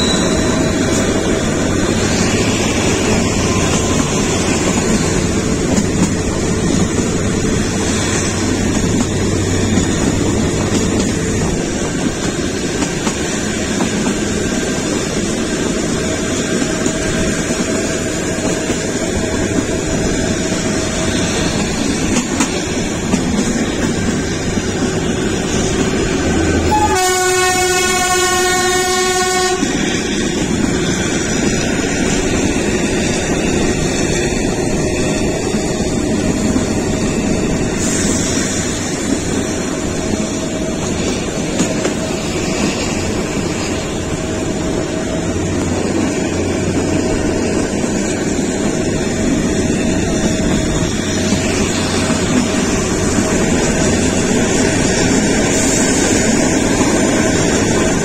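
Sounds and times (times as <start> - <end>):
train horn: 0.0 - 1.1, 26.4 - 29.8
train wheels clattering on rails: 0.0 - 58.0.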